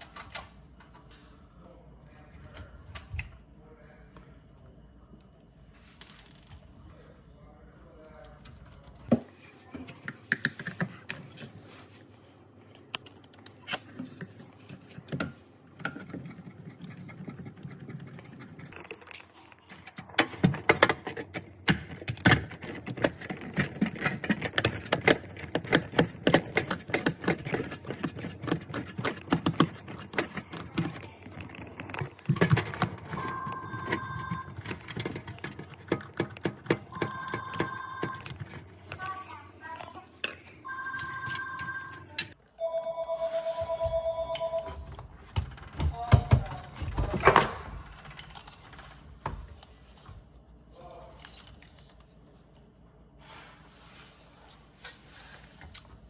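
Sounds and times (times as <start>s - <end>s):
phone ringing: 32.9s - 35.0s, 36.9s - 38.6s, 40.6s - 45.0s.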